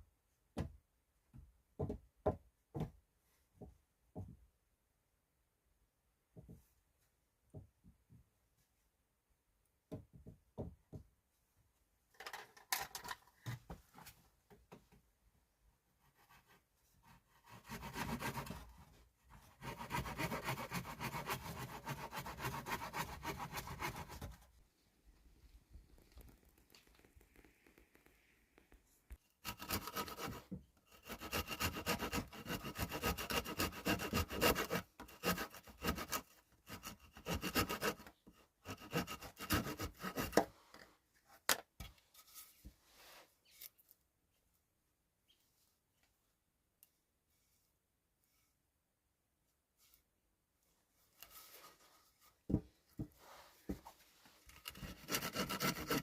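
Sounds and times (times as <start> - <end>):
hand saw cutting wood: 17.1 - 24.4, 29.4 - 40.5, 54.5 - 56.0.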